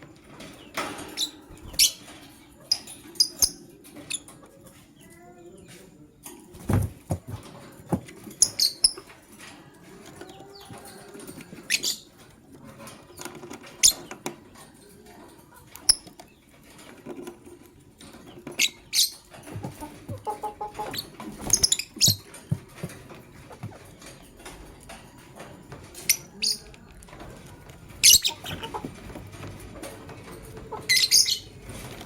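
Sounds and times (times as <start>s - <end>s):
birds chirping high: 0.0s - 32.0s
scrabbling and clicking: 6.2s - 14.7s, 15.6s - 32.0s.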